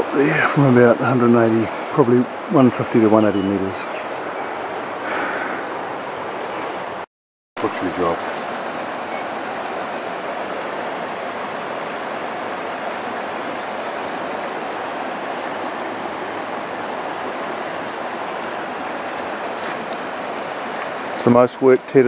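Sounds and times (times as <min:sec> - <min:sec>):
river water flowing: 0:00.0 - 0:07.0, 0:07.6 - 0:22.0.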